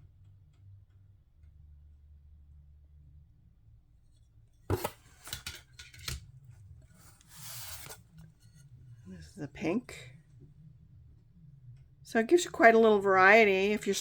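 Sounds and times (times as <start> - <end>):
packaging rubbing rustle: 7.0 - 8.1.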